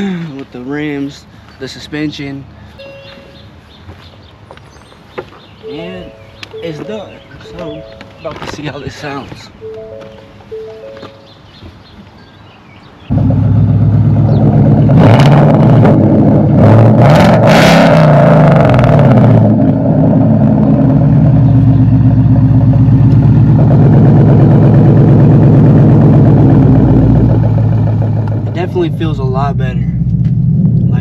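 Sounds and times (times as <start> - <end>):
car engine exhaust revving: 13.1 - 31.0.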